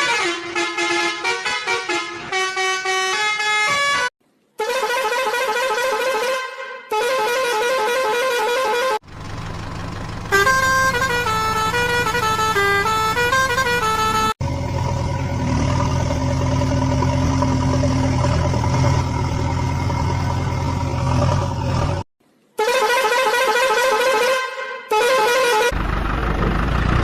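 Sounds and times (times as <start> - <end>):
held horn-like tone: 0.0 - 9.0, 10.3 - 14.4, 22.6 - 25.8
electronic engine rumble: 9.1 - 22.0, 25.8 - 27.0
electronic warbling horn tone: 10.3 - 22.0.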